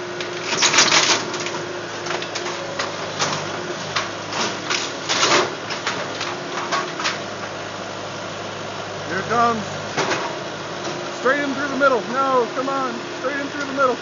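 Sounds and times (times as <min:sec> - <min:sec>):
engine running: 0:00.0 - 0:14.0
clattering and scraping: 0:00.3 - 0:07.2.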